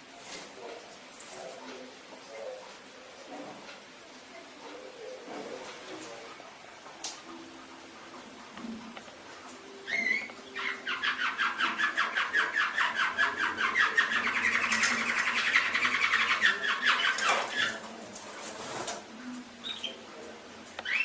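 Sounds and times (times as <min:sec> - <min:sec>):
canary singing: 0:07.3 - 0:18.0, 0:19.5 - 0:21.0
canary call: 0:09.7 - 0:17.9.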